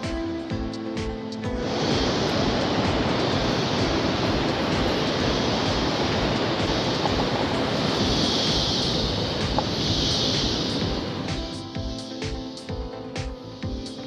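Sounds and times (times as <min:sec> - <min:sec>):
music: 0:00.0 - 0:14.0
falling water rushing: 0:01.6 - 0:12.5.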